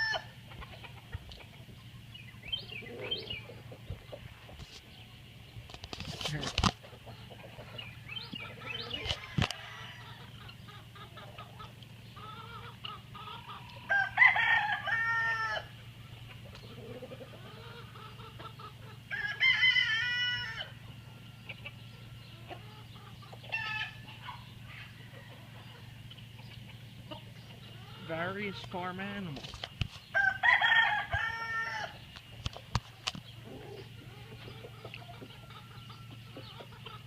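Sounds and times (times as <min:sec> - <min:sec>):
rooster crowing: 0:00.0 - 0:00.4, 0:08.6 - 0:10.4, 0:13.5 - 0:15.8, 0:19.1 - 0:21.5, 0:30.1 - 0:32.0
chickens clucking softly: 0:00.0 - 0:13.9, 0:15.4 - 0:19.1, 0:19.8 - 0:30.2, 0:31.1 - 0:37.0
steady low hum: 0:00.0 - 0:37.0.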